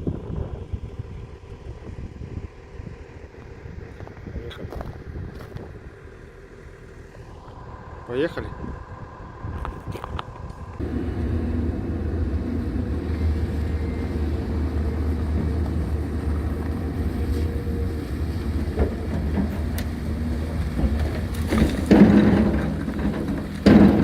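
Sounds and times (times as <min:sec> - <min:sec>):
vehicle engine driving off: 0:10.1 - 0:24.0.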